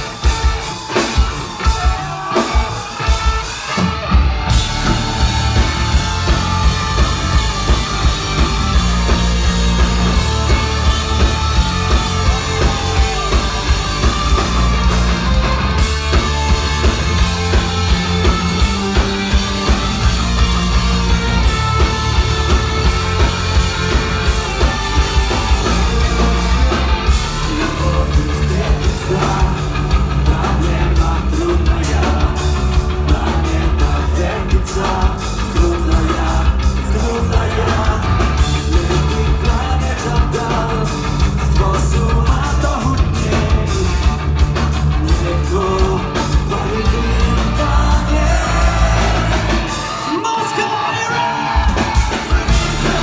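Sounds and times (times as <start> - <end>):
punk rock band playing: 0.0 - 53.0
person singing: 27.2 - 44.0.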